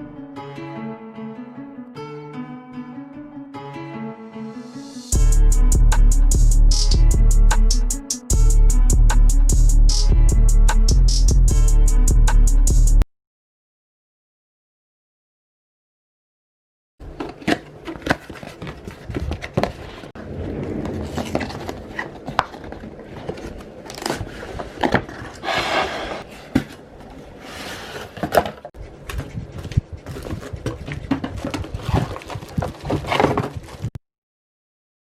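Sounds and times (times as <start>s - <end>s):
packaging rustle: 17.1s - 20.1s, 20.8s - 25.4s, 31.2s - 33.9s.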